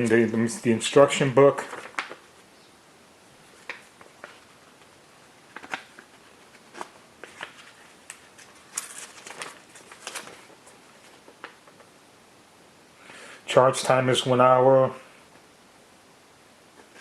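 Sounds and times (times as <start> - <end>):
paper pages rustling: 1.6 - 2.4, 3.5 - 11.9.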